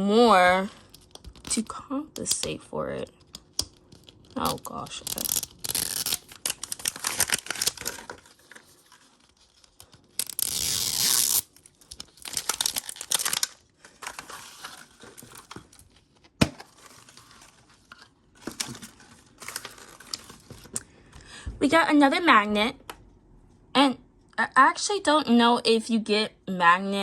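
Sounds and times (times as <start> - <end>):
plastic bags tearing and crinkling: 4.0 - 17.6, 18.4 - 20.8.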